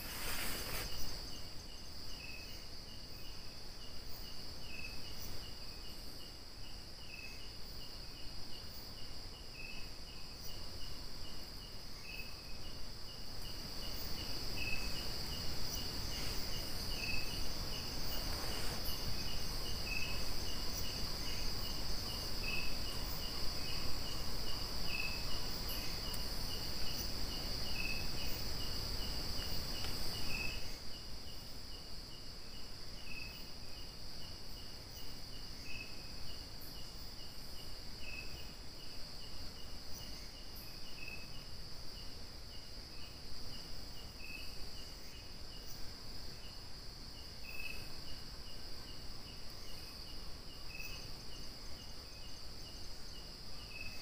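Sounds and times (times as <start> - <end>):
cricket chirps: 0.0 - 54.0
insect high-pitched trill: 0.0 - 54.0
low background hiss: 0.0 - 54.0.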